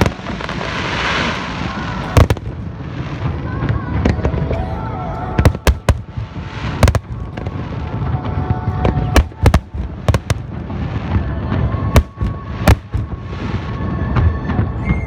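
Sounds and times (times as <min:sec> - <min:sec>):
fireworks bangs: 0:00.0 - 0:03.4, 0:05.4 - 0:07.6, 0:09.1 - 0:10.8, 0:11.9 - 0:13.7.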